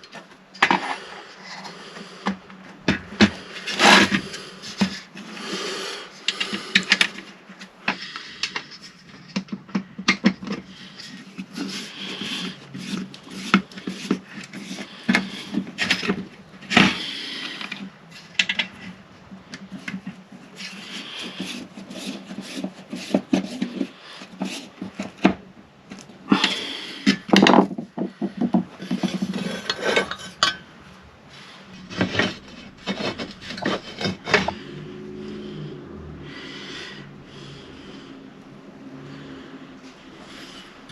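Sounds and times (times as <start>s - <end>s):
clicks and knocks of parts: 6.2s - 30.6s.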